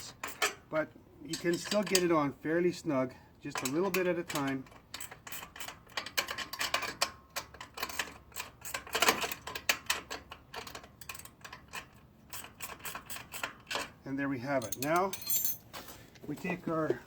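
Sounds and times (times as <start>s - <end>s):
wrenches clicking on metal bolts: 0.0s - 0.7s, 1.3s - 2.2s, 3.5s - 14.0s, 14.6s - 15.6s.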